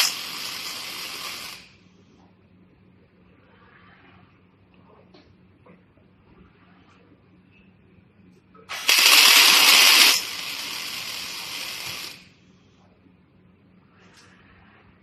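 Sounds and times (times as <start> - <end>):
welding machine hissing: 0.0 - 1.8, 8.7 - 12.3.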